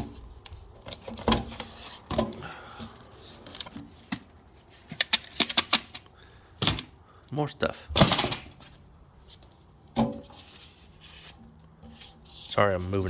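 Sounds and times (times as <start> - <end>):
rustling: 8.4 - 13.0.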